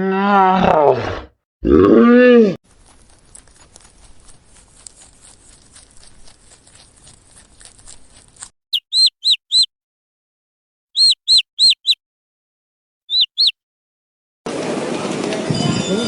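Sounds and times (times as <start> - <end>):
bird chirping: 8.7 - 9.7, 11.0 - 12.0, 13.1 - 13.6.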